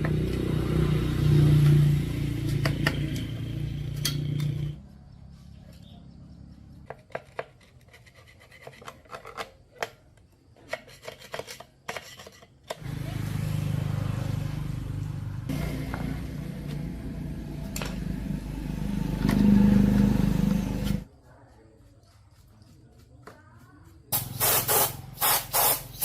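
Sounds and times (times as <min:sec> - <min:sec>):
power tool motor running: 0:15.5 - 0:21.0.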